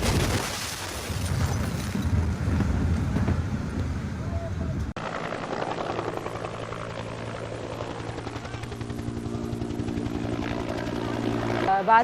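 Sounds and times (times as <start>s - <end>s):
helicopter rotor chop: 4.9s - 12.0s.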